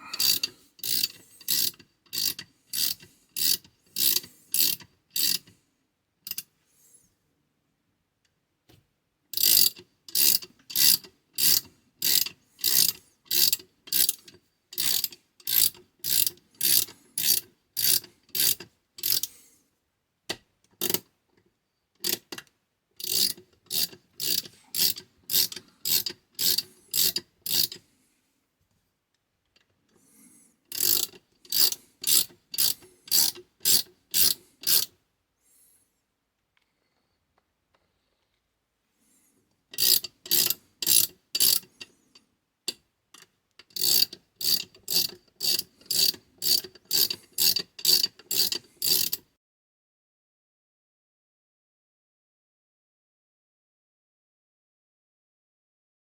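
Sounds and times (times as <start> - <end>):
ratchet wrench clicking: 0.2 - 5.5, 6.3 - 6.5, 9.4 - 19.3, 22.0 - 22.4, 23.0 - 27.8, 30.7 - 34.9, 39.8 - 41.8, 43.6 - 49.2.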